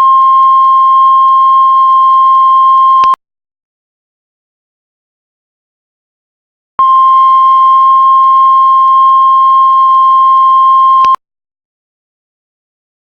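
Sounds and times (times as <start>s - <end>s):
heart monitor flatline beep: 0.0s - 3.2s, 6.8s - 11.2s.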